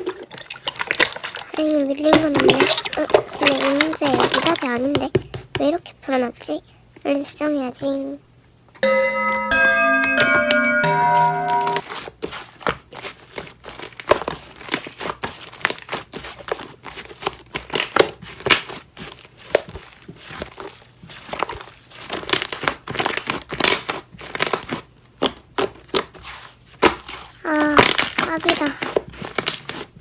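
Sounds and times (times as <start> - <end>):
slime squished by hand: 0.0 - 4.7, 11.8 - 30.0.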